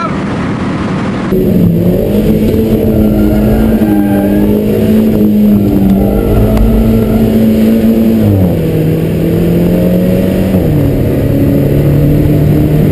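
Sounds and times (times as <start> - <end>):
car engine and exhaust running: 0.0 - 12.9.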